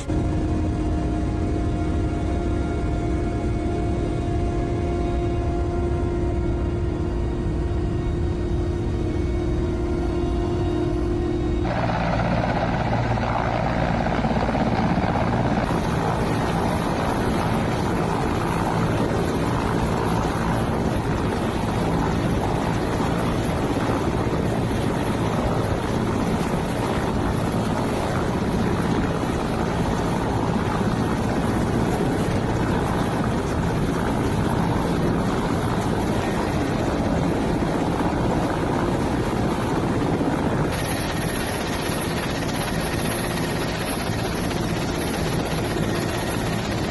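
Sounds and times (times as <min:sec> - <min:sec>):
loud engine drone: 0:06.5 - 0:38.2.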